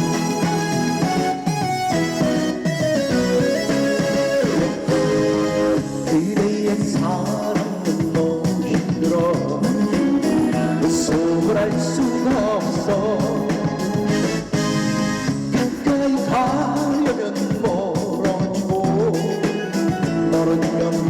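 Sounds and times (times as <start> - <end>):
live trot music with band: 0.0 - 21.0.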